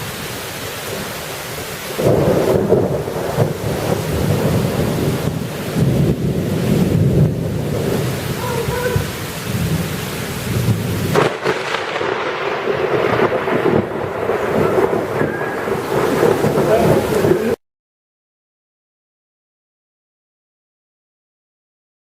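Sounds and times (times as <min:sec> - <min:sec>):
heavy rain hissing: 0:00.0 - 0:17.6
thunder rumbling: 0:00.0 - 0:17.6.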